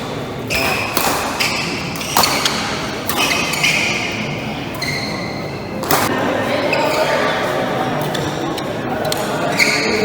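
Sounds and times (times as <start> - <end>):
shoes squeaking on court floor: 0.0 - 8.5, 9.3 - 10.0
racket striking shuttlecock: 0.5 - 3.8, 5.8 - 6.1.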